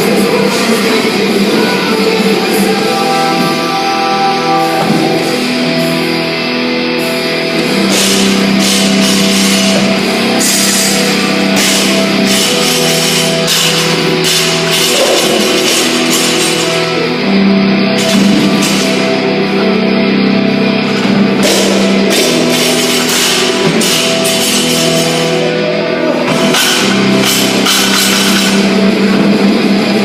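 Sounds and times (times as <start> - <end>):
distorted electric guitar: 0.0 - 30.0
drum beat with cymbals: 7.8 - 16.8, 21.4 - 25.4.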